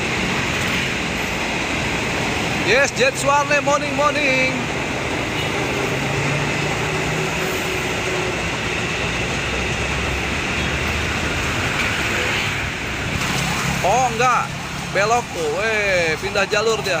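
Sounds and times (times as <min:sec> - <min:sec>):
train rumbling past: 0:03.8 - 0:13.8.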